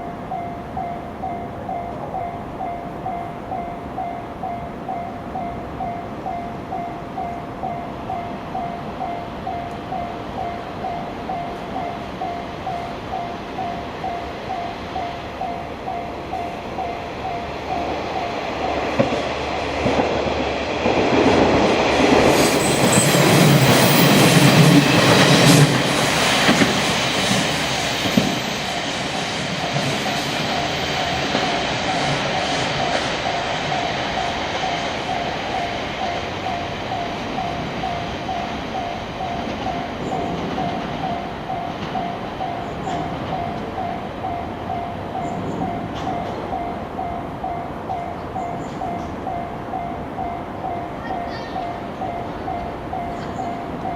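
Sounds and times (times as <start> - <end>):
level-crossing warning bell: 0.0 - 53.9
train passing: 0.0 - 53.9
wheels clicking over rail joints: 0.0 - 53.9
wheel squeal: 22.3 - 33.5.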